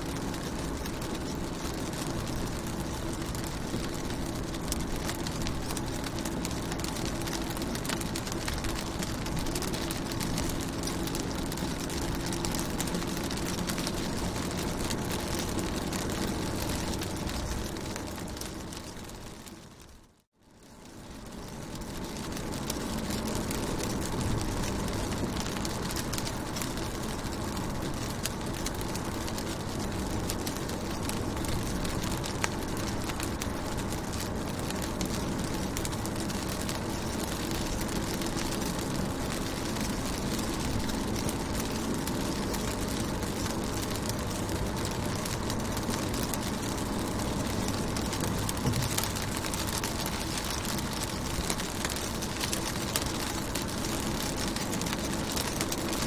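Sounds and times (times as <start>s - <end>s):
constant low rumble: 0.0s - 56.0s
rain patter on car: 0.0s - 56.0s.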